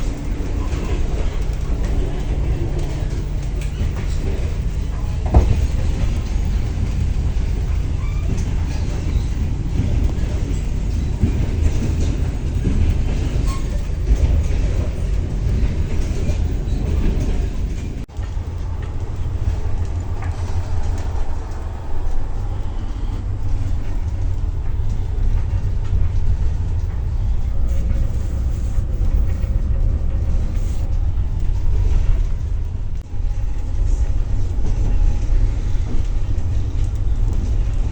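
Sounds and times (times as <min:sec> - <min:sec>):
train wheels rumbling on rails: 0:00.0 - 0:37.9.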